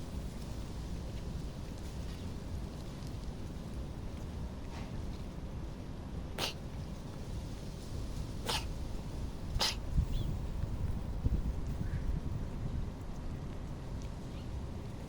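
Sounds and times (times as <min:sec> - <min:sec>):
low background rumble: 0:00.0 - 0:15.0
cat sneezing: 0:06.3 - 0:06.6, 0:08.4 - 0:08.8, 0:09.5 - 0:10.0.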